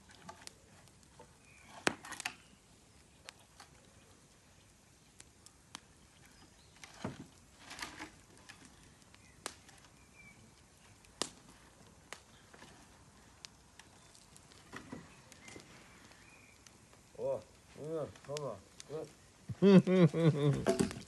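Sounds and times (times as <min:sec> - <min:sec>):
campfire crackling and popping: 0:00.0 - 0:21.0.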